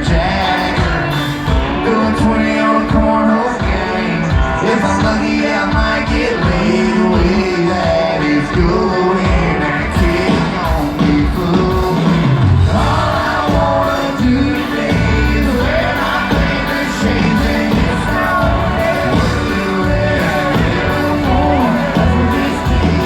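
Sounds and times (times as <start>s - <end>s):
bass guitar: 0.0s - 23.0s
drums: 0.0s - 23.0s
guitars: 0.0s - 23.0s
person singing: 0.0s - 23.0s.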